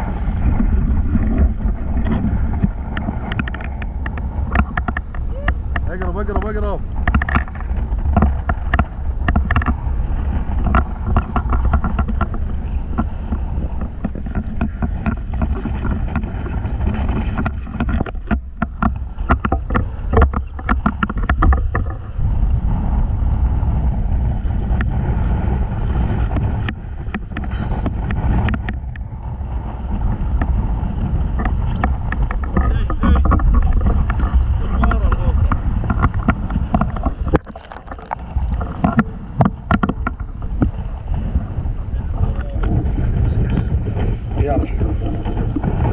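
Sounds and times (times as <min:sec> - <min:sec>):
boat engine and hull rumble: 0:00.0 - 0:45.9
wind buffeting microphone: 0:00.0 - 0:45.9
short knocks and crackles: 0:00.6 - 0:22.3, 0:26.0 - 0:45.9.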